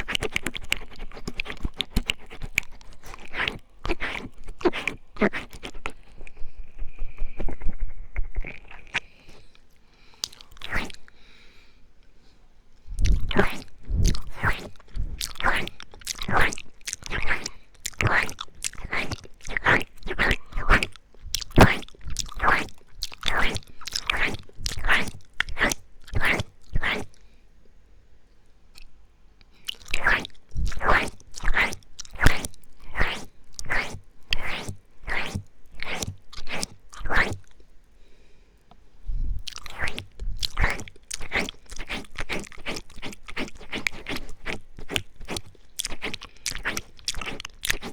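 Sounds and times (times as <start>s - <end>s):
wet lip and tongue smacks: 0.0s - 11.2s, 13.0s - 27.2s, 29.5s - 37.7s, 39.3s - 47.9s.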